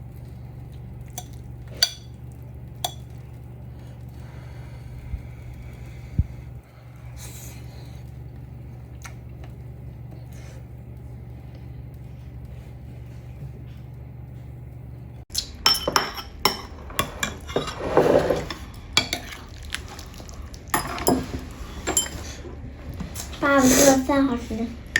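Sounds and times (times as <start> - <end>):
steady low hum: 0.0 - 24.9
utensils clinking against dishes: 15.4 - 19.5, 20.7 - 22.4.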